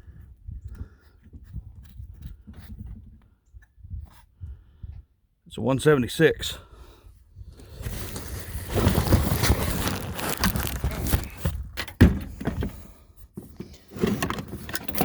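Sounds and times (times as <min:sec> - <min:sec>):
packing rustling and clattering: 0:07.6 - 0:12.8, 0:13.4 - 0:15.0
sharp thunk: 0:12.0 - 0:12.7.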